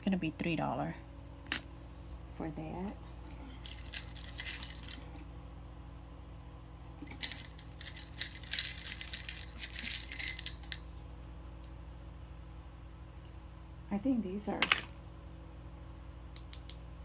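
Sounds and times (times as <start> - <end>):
beads clinking and rattling: 3.6 - 5.1, 7.1 - 11.0.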